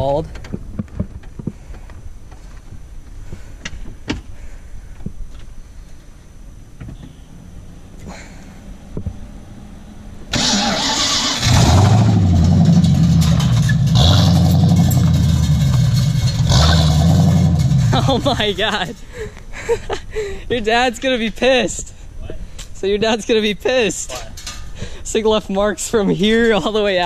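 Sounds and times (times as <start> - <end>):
starter cranking engine: 10.3 - 18.1.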